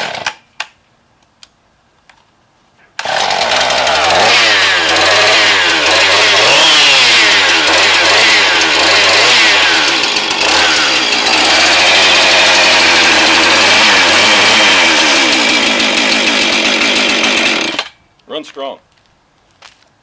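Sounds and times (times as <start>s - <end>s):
chainsaw engine revving: 3.0s - 18.0s.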